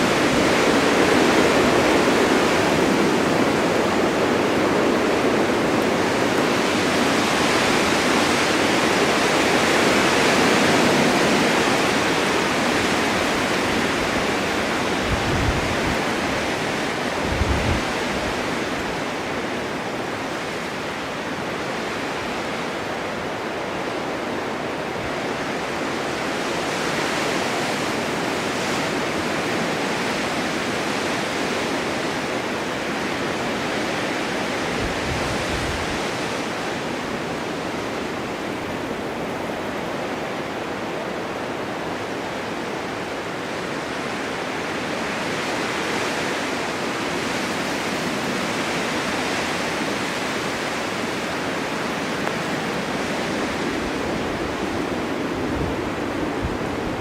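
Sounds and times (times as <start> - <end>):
low rumble of wind buffeting: 0.0 - 22.4, 32.4 - 40.8, 51.1 - 57.0
blizzard wind rushing: 0.0 - 57.0.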